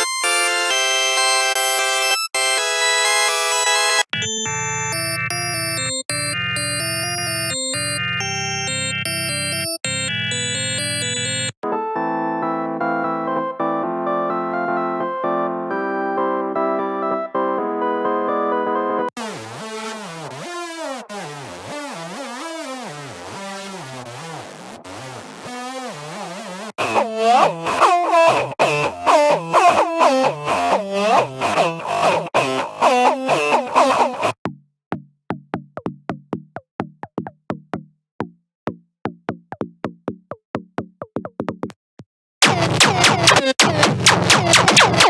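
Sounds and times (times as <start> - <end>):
synthesizer percussive clicks: 38.7 - 45.0
buzzy synthesizer tone sliding in pitch: 42.4 - 45.0.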